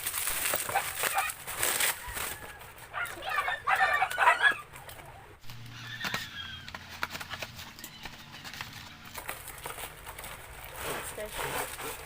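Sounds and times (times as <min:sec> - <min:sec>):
plastic stand and packaging handled: 0:06.7 - 0:12.0.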